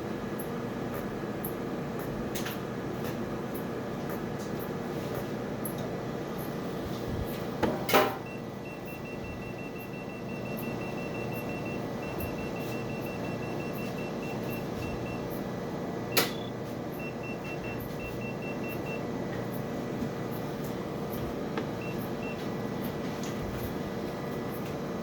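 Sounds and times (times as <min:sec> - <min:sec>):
fan hum: 0:00.0 - 0:25.0
short high beeps: 0:16.1 - 0:19.0.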